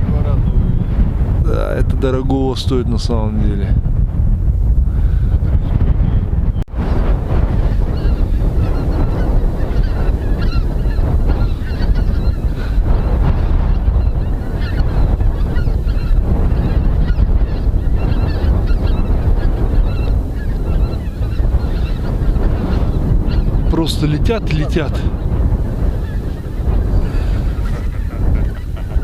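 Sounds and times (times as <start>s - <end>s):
wind noise on microphone: 0.0s - 29.0s
geese honking: 7.4s - 29.0s.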